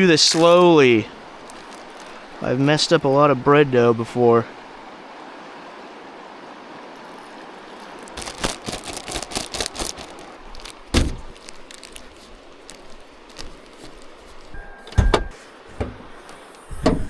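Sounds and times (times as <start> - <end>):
background hiss: 0.0 - 17.0
heavy thump: 10.9 - 11.4, 16.7 - 17.0.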